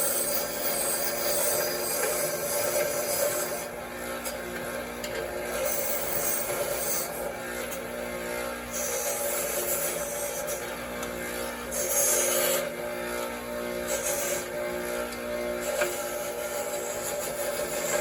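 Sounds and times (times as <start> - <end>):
wire wheel motor hum: 0.0 - 18.0.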